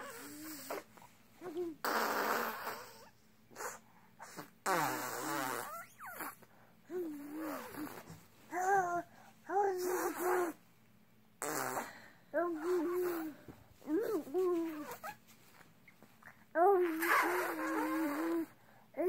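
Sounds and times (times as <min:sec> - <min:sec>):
child blowing raspberries: 0:01.8 - 0:06.4, 0:11.4 - 0:12.0, 0:12.6 - 0:13.4, 0:16.8 - 0:18.6
child squealing and cooing: 0:14.0 - 0:15.2, 0:16.6 - 0:18.5.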